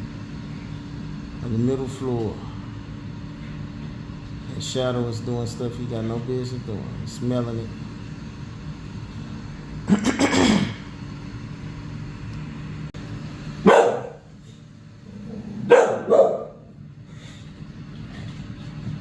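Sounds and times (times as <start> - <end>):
low steady hum: 0.0 - 19.0
dog barking: 13.6 - 14.2, 15.6 - 16.6.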